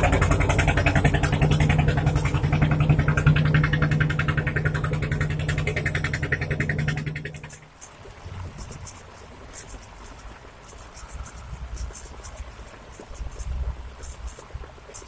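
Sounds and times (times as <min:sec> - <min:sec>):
fast river water running: 0:00.0 - 0:15.0
faint high clicks: 0:05.4 - 0:15.0.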